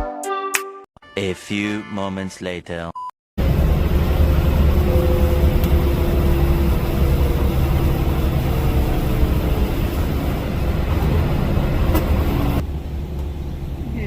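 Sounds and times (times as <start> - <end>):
truck engine and road noise: 3.4 - 14.0.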